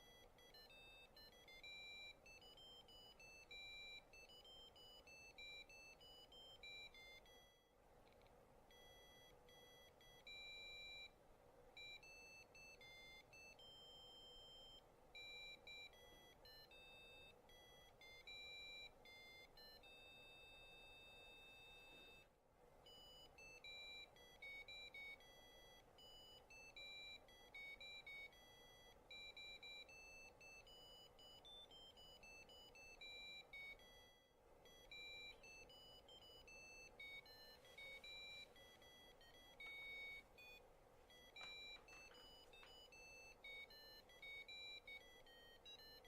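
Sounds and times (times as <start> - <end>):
buzzer playing beeping melody: 22.9 - 46.0.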